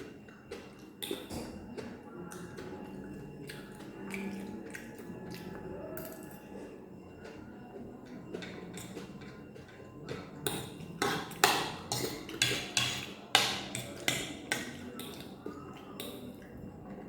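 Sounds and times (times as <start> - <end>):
cutlery scraping on a plate: 8.4 - 16.3.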